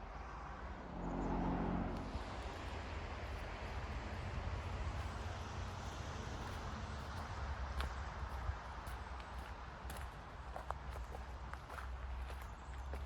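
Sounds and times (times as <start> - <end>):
road traffic rumble: 0.0 - 13.0
vehicle passing: 0.2 - 7.5.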